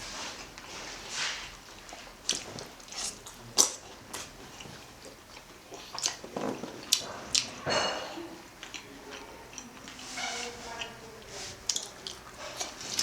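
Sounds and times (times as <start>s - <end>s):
chewing with wet smacks: 0.0s - 13.0s.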